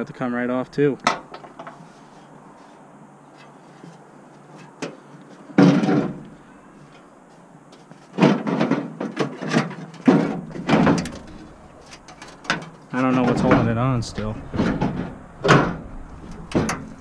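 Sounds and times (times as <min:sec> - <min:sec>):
sheet metal rattling and clanking: 0:08.2 - 0:17.0.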